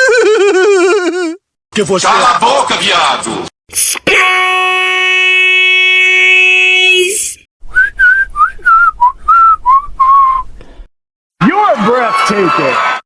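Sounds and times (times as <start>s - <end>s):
whistled tune: 7.7s - 10.5s.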